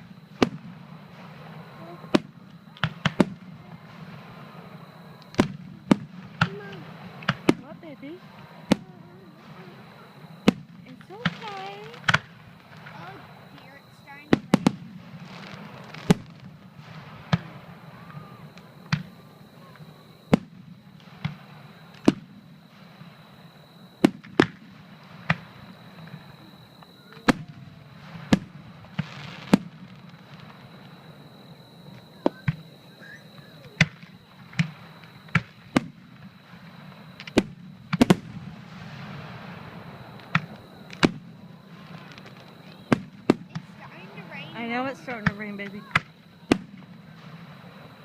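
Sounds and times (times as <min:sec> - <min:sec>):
thin steady high tone: 0:00.0 - 0:24.1, 0:24.7 - 0:37.8, 0:38.4 - 0:48.0
fireworks bangs: 0:00.0 - 0:48.0.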